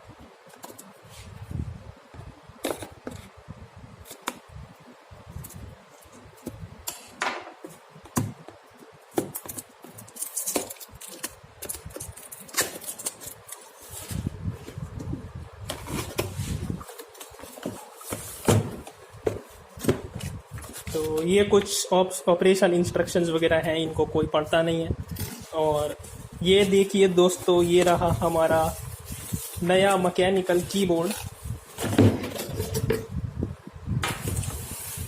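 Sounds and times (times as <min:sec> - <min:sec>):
cardboard and paper rustling: 0:09.2 - 0:15.0, 0:15.6 - 0:21.4, 0:25.1 - 0:33.0.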